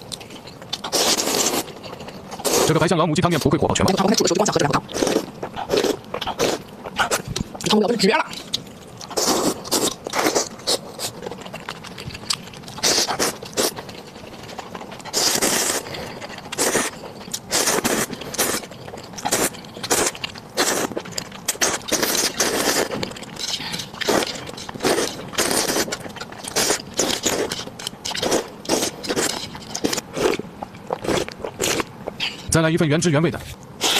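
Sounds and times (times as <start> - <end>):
person slurping noodles: 0.9 - 1.7, 2.4 - 2.8, 9.1 - 11.1, 15.1 - 18.6, 19.3 - 27.6.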